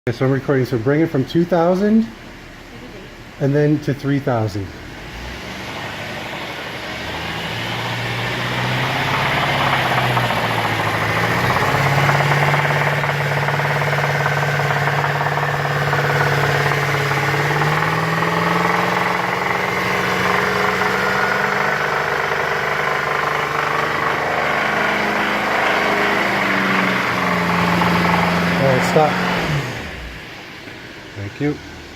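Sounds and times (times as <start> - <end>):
car engine at raised revs: 0.5 - 31.9
engine knocking noise: 6.5 - 29.8.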